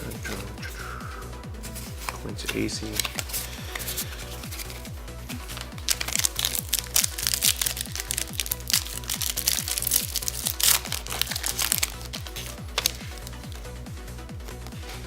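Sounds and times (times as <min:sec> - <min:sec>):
electronic music with steady beat: 0:00.0 - 0:15.0
foil wrapper crinkling and tearing: 0:01.8 - 0:13.6.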